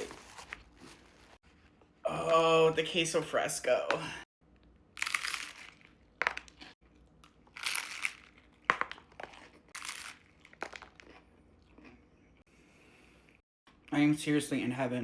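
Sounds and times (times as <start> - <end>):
food wrapping crinkling: 0.0 - 1.4, 5.0 - 11.2.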